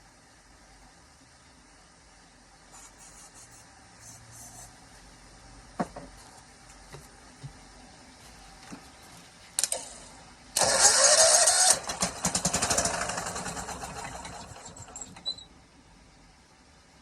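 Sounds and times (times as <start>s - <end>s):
engine cranking and firing: 10.6s - 15.3s.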